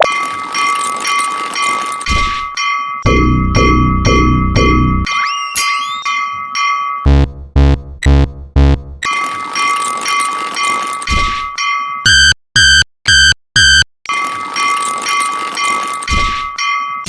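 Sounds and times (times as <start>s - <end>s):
short pitched tones: 3.0s - 5.1s.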